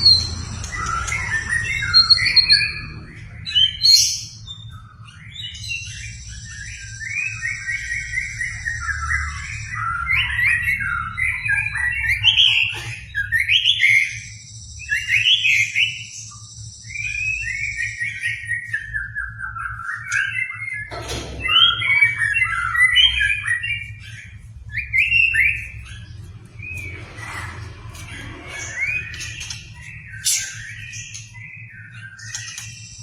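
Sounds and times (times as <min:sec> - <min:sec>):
bird singing whistled phrases: 0:03.5 - 0:26.9.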